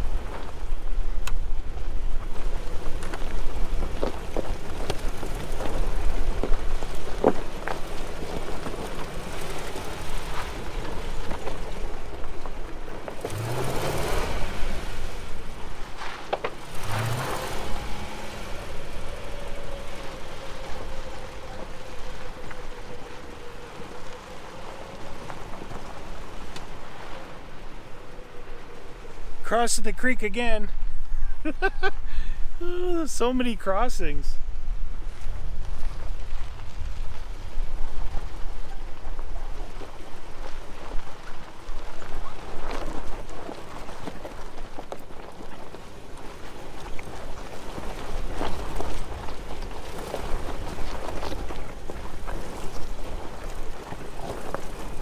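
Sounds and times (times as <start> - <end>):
car engine droning: 0.0 - 31.8
tyre and trail noise: 0.0 - 55.0
stones knocking under tyres: 14.6 - 20.1.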